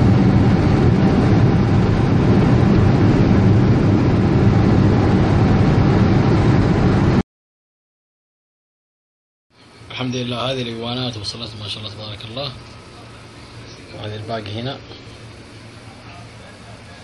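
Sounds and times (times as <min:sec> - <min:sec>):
loud low rumbling: 0:00.0 - 0:07.2.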